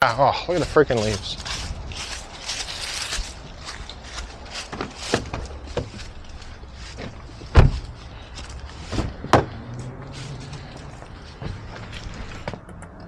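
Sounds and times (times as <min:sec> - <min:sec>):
knocks and thumps: 0:07.0 - 0:07.9, 0:08.8 - 0:09.6.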